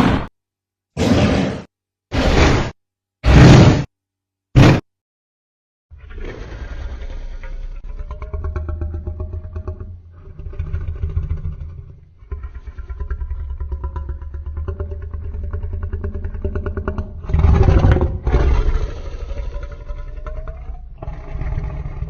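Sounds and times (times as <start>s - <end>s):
harsh creature snarl: 1.0s - 3.9s, 12.3s - 22.0s
creature rattling growl: 6.3s - 22.0s.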